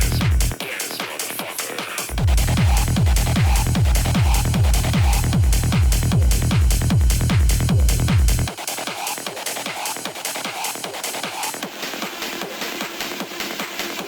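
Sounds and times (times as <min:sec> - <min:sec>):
deep kick drum: 0:00.0 - 0:00.6, 0:02.1 - 0:08.5
fast hi-hats: 0:00.0 - 0:14.0
hard techno music: 0:00.0 - 0:14.0.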